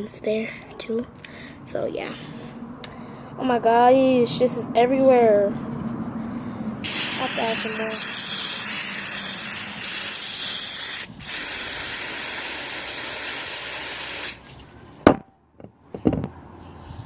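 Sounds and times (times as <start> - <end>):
aerosol spray hissing: 6.8 - 14.5.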